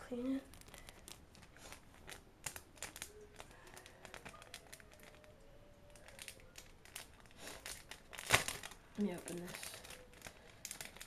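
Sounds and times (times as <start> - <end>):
packaging crinkling and clicking: 0.2 - 11.0.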